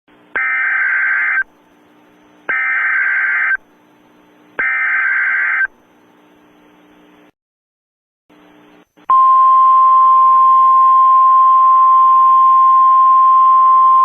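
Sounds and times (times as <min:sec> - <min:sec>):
digital data tone bursts: 0:02.5 - 0:03.6.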